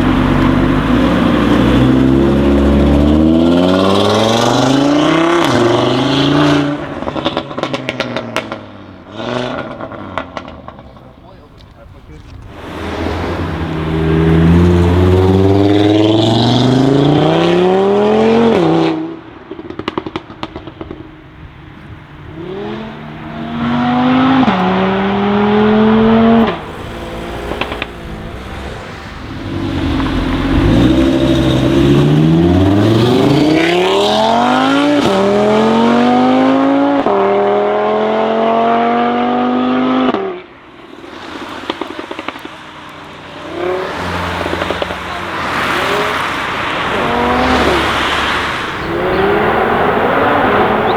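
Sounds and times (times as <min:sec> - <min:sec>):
car engine accelerating hard: 0:00.0 - 0:50.9
exhaust pops and crackles: 0:06.7 - 0:16.6, 0:19.2 - 0:22.1, 0:26.0 - 0:35.3, 0:40.1 - 0:49.2.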